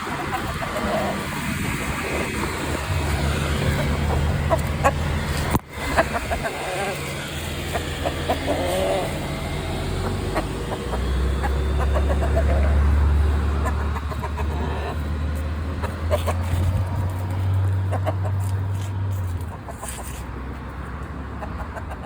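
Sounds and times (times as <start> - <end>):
steady low hum: 0.0 - 17.6
rooster clucking: 0.0 - 22.0.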